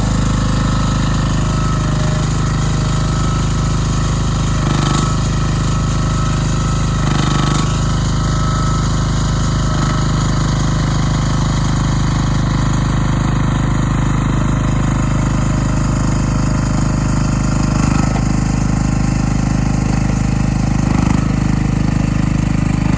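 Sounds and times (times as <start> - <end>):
small excavator engine running: 0.0 - 22.9.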